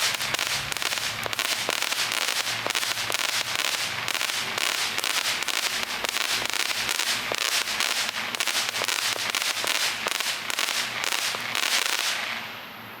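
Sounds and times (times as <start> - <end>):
fireworks crackling: 0.0 - 12.8.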